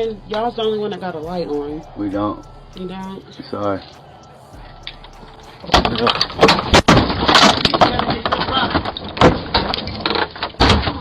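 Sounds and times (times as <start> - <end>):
people shouting: 0.0 - 8.0
bangs and crashes at a door: 6.6 - 11.0.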